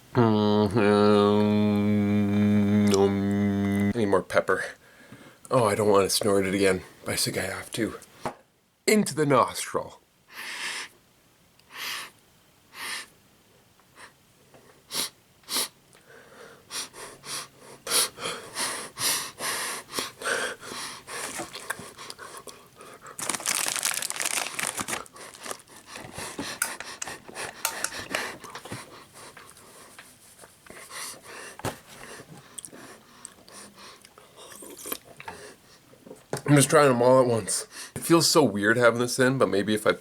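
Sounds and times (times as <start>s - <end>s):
man sniffing and snorting: 0.8s - 4.0s, 14.9s - 15.8s.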